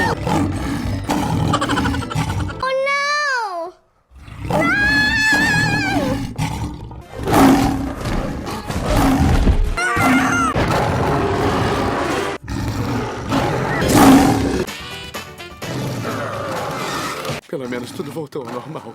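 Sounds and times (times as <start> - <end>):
lion roaring and snarling: 0.0 - 2.6, 4.1 - 14.7, 15.6 - 18.9
high wavering cry: 9.8 - 10.6
music: 13.8 - 17.4.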